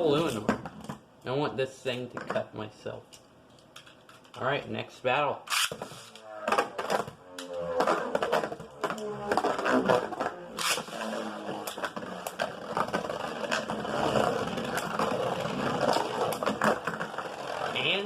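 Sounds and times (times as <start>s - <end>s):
spinning tops whirring and scraping: 5.5s - 18.0s.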